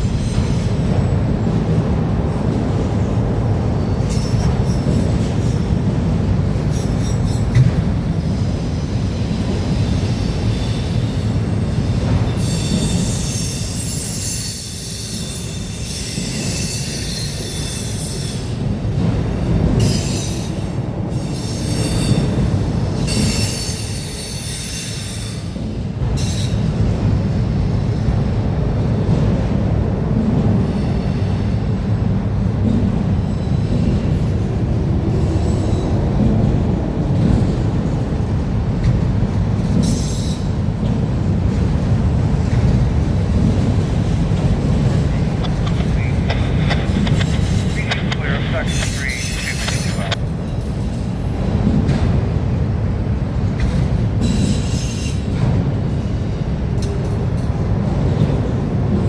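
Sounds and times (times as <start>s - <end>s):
freight train rumbling on rails: 0.0s - 59.0s
wheels squealing against rails: 3.7s - 18.6s, 19.8s - 27.4s, 54.2s - 55.4s.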